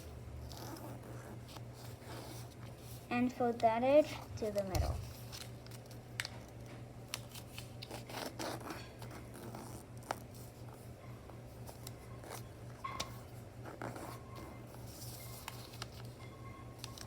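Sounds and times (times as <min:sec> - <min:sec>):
paper rustling and creasing: 0:04.1 - 0:06.0, 0:13.0 - 0:16.2.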